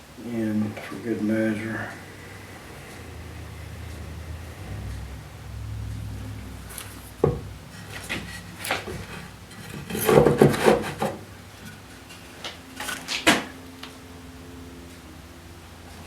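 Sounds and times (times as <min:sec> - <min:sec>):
wooden boards rubbing: 0:07.2 - 0:11.2.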